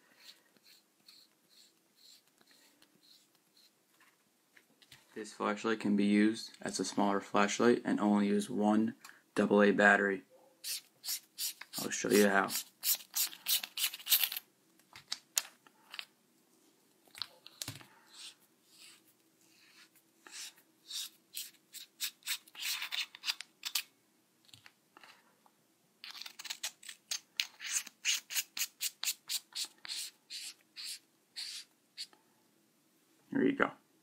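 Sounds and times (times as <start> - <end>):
threaded flashlight sections scraping: 10.7 - 14.4.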